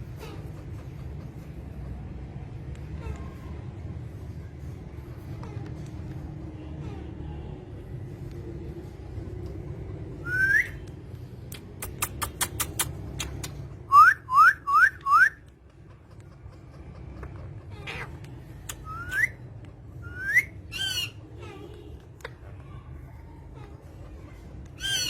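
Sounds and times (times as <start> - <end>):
parrot whistling rising notes: 10.2 - 10.8, 13.9 - 15.4, 20.0 - 21.0
sharp clicks: 10.8 - 13.8, 18.2 - 19.3.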